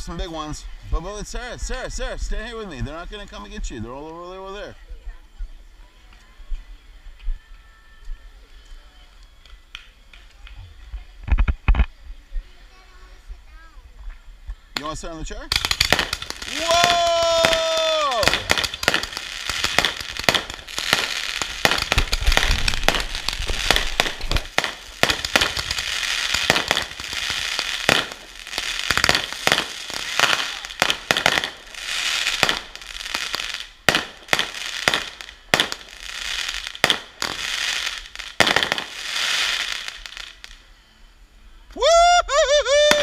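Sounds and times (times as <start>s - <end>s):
fireworks crackling and popping: 8.2s - 13.3s, 13.9s - 40.7s, 41.8s - 43.0s.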